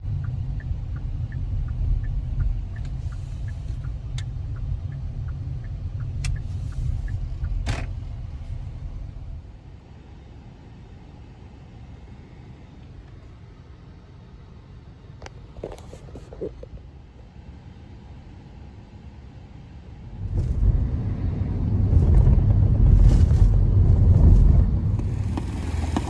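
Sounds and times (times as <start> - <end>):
low car rumble: 0.0 - 26.0
steady light ticking: 0.1 - 7.6.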